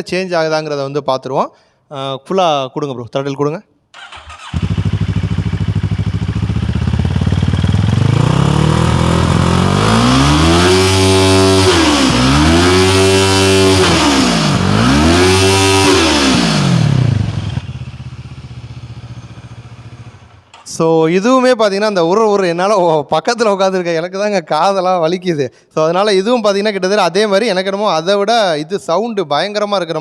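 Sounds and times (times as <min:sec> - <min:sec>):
motorcycle engine revving: 0:04.0 - 0:20.9.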